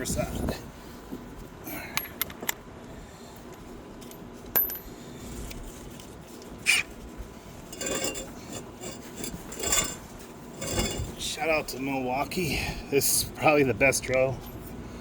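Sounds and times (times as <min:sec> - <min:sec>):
metal tools clinking: 0:07.7 - 0:10.0, 0:10.6 - 0:11.2
short metallic rattle: 0:07.7 - 0:10.0, 0:10.6 - 0:11.2.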